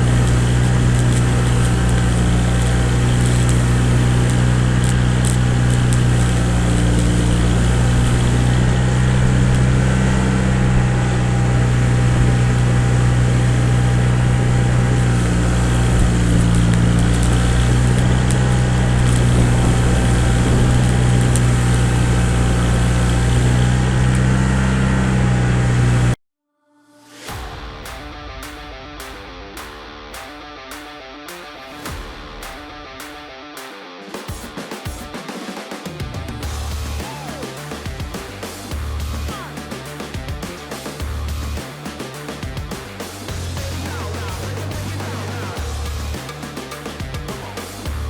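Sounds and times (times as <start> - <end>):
engine running steadily: 0.0 - 26.2.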